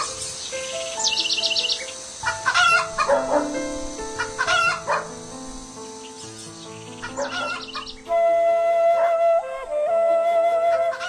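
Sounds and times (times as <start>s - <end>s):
flute-like background music: 0.0s - 6.1s, 6.7s - 11.0s
high chirps: 0.0s - 8.2s
roosters crowing: 2.2s - 3.6s, 4.2s - 5.1s, 7.0s - 7.8s.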